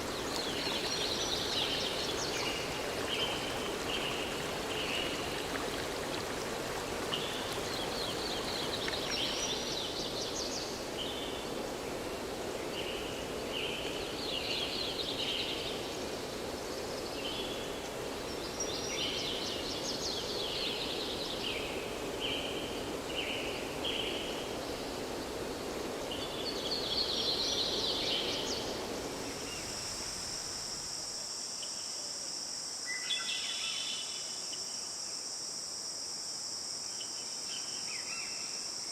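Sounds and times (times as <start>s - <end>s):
songbirds calling: 0.0s - 10.7s
stream flowing: 0.0s - 18.9s
crickets chirring: 0.0s - 38.9s.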